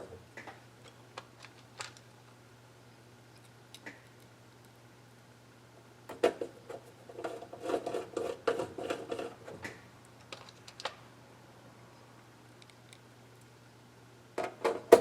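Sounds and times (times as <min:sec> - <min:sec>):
faint steady hum: 0:00.0 - 0:15.0
small objects clattering on workbench: 0:00.5 - 0:02.1.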